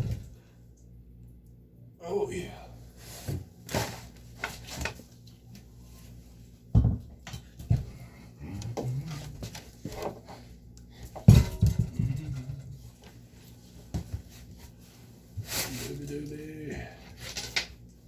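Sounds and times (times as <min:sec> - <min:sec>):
hard objects knocking and clattering: 0:11.2 - 0:12.8.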